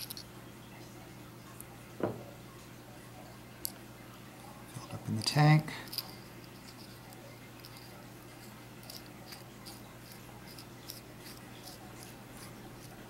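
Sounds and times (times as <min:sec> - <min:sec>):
small parts clicking and scraping: 0:00.0 - 0:00.3, 0:05.2 - 0:13.0
low steady hum: 0:00.0 - 0:13.0.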